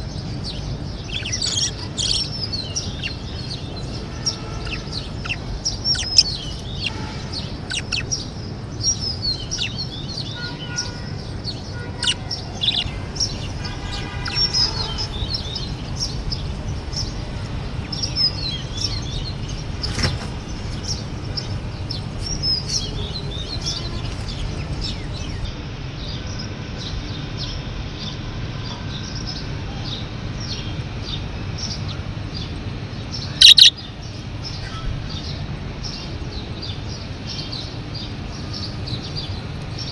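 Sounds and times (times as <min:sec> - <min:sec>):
steady low hum: 0:00.0 - 0:10.4
budgerigars chirping: 0:00.5 - 0:10.9, 0:11.9 - 0:13.6, 0:14.2 - 0:16.1, 0:33.4 - 0:33.7.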